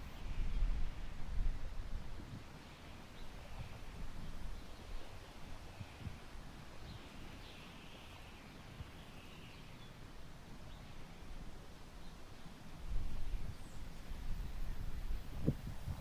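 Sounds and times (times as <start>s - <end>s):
wind gusting through grass: 12.7s - 16.0s.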